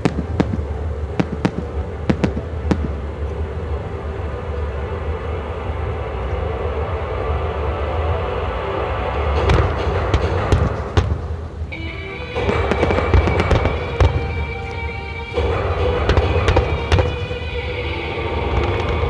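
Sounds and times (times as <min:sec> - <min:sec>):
fireworks bangs and crackles: 0:00.0 - 0:03.4, 0:09.3 - 0:19.0
music: 0:00.0 - 0:19.0.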